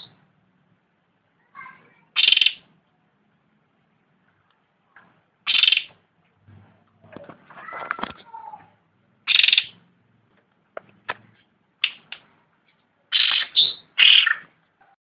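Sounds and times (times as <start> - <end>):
songbird singing: 2.1 - 2.7, 5.4 - 6.0, 9.3 - 9.8, 13.1 - 14.5.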